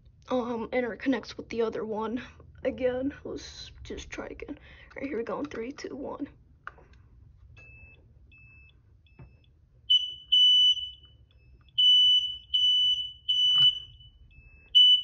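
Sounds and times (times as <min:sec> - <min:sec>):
smoke alarm high beeps: 0:07.6 - 0:15.0.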